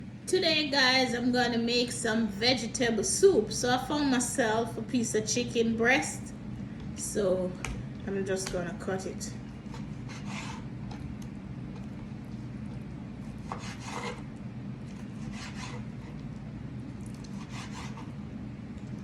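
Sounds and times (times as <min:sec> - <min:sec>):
knife sawing through chicken: 0:10.1 - 0:10.7, 0:13.4 - 0:14.3, 0:15.2 - 0:16.2, 0:17.3 - 0:18.1.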